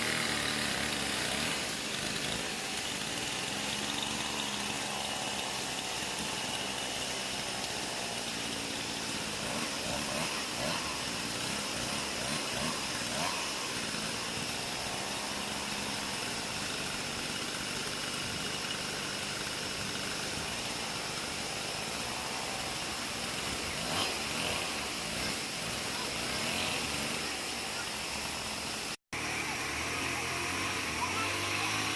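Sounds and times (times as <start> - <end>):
engine idling: 0.0 - 31.9.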